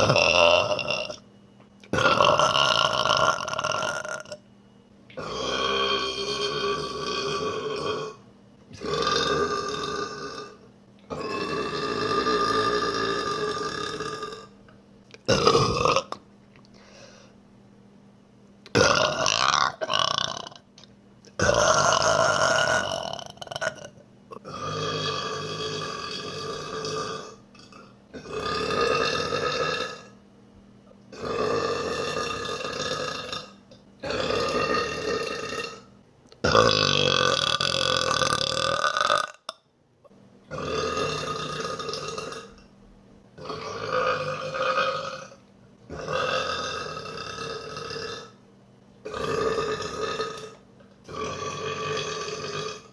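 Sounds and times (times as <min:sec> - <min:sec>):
woman burping: 0:00.0 - 0:01.2, 0:01.9 - 0:04.4, 0:15.2 - 0:16.2.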